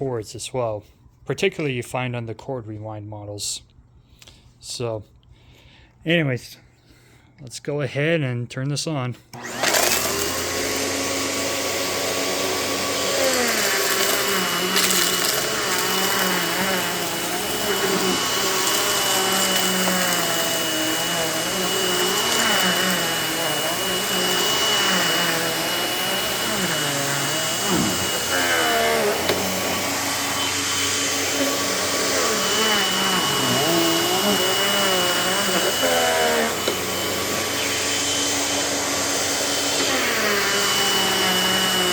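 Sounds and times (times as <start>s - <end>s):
upright vacuum cleaner running: 9.4s - 41.9s.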